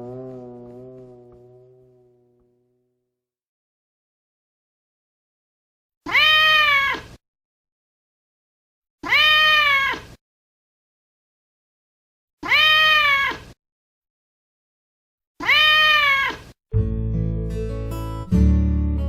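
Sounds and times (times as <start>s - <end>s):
angry cat meowing: 6.1s - 7.1s, 9.0s - 10.1s, 12.4s - 13.4s, 15.4s - 16.5s
strummed acoustic guitar music: 16.8s - 19.0s.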